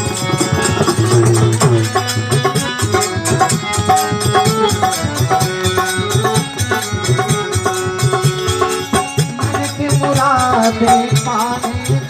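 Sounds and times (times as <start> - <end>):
melody instrument: 0.0 - 11.8
tabla: 0.0 - 12.0.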